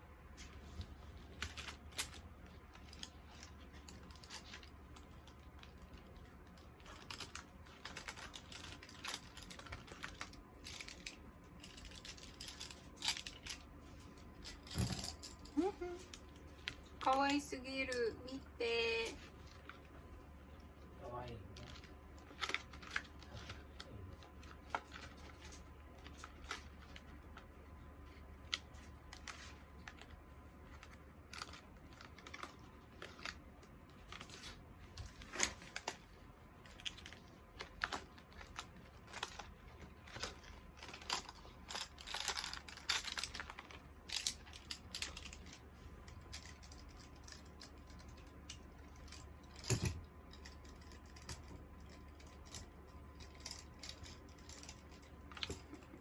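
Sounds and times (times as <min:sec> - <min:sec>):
packaging rustling: 0:00.4 - 0:17.3, 0:20.6 - 0:56.0
small items clicking and tapping: 0:21.2 - 0:56.0.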